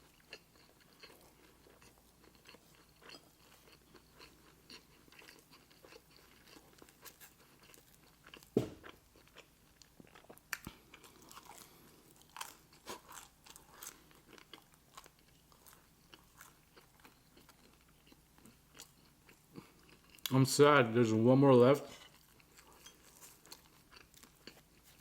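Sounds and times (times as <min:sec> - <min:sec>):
crunching and chewing: 0:00.0 - 0:20.3, 0:22.0 - 0:25.0
low thump: 0:08.6 - 0:08.8.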